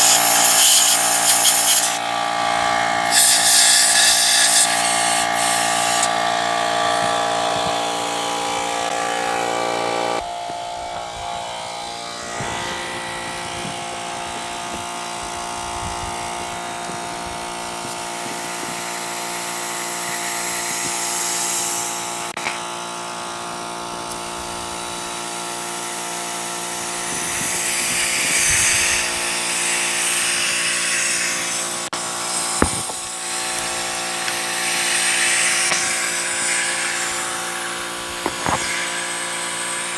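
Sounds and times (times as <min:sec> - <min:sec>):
air compressor motor running: 0:00.0 - 0:39.9
compressed air hissing: 0:03.0 - 0:08.1, 0:24.1 - 0:39.9.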